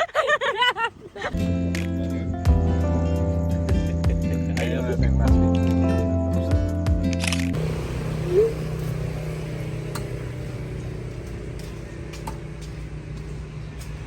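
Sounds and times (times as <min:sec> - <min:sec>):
vehicle engine and road noise: 0:00.0 - 0:14.0
brief rising tone: 0:07.9 - 0:10.5.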